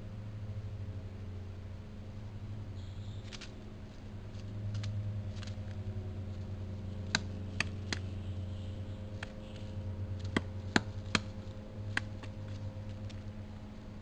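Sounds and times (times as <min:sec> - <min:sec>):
steady electrical hum: 0:00.0 - 0:14.0
woodpecker pecking at tree: 0:02.8 - 0:08.5, 0:09.1 - 0:13.6.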